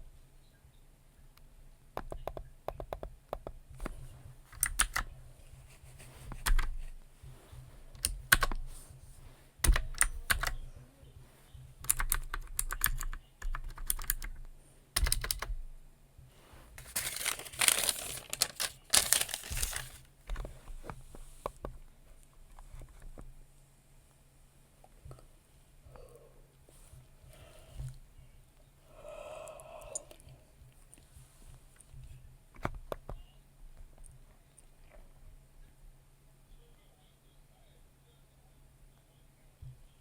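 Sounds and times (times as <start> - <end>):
keyboard key clicks: 11.8 - 14.4, 15.0 - 15.5.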